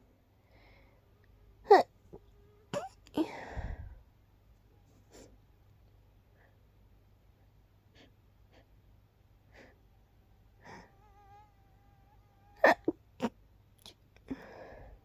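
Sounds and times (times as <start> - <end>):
faint quick breaths: 0.4 - 1.1, 3.2 - 4.1, 14.3 - 15.0.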